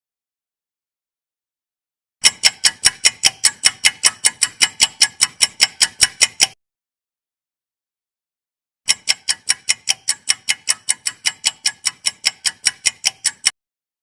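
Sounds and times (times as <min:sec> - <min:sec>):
clock ticking fast: 0:02.2 - 0:06.6, 0:08.9 - 0:13.6.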